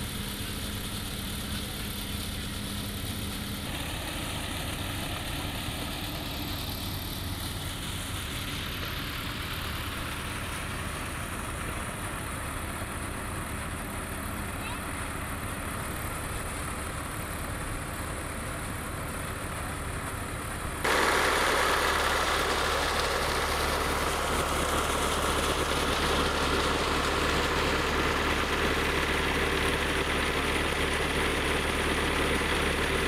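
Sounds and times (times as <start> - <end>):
engine humming: 0.0 - 33.0.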